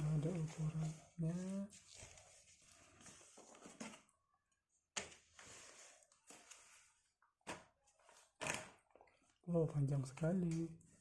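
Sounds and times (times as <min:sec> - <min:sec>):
rustling of packaging: 0:00.0 - 0:04.2, 0:05.0 - 0:09.4.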